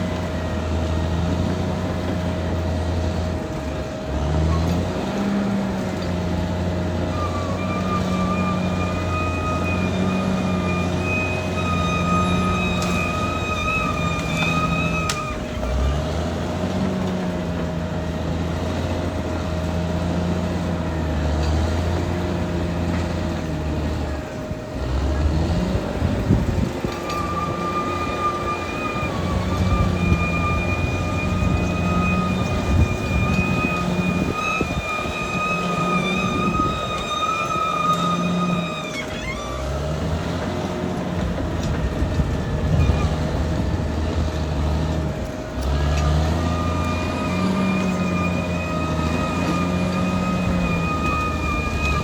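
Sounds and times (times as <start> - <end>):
bulldozer diesel engine running: 0.0 - 52.0
thin high squeal: 4.3 - 16.2, 26.5 - 40.7, 41.9 - 43.8, 44.6 - 52.0.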